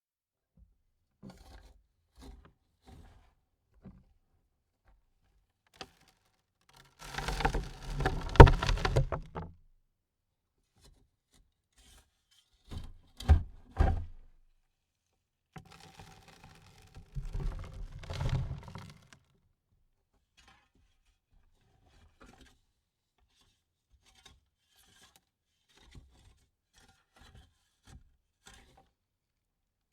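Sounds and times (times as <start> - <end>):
dirt clods thudding on wood: 7.0 - 9.5.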